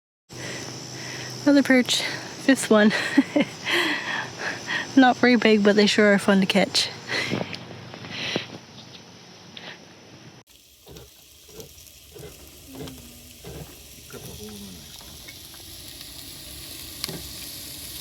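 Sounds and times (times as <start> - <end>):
food sizzling in a pan: 10.5 - 18.0.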